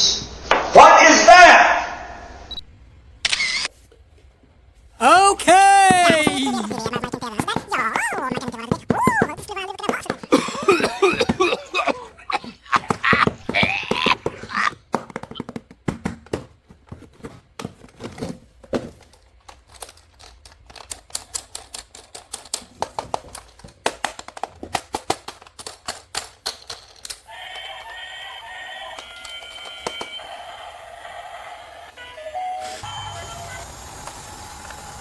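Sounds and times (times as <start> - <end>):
plastic toys clattering: 5.8 - 28.0, 28.8 - 30.2.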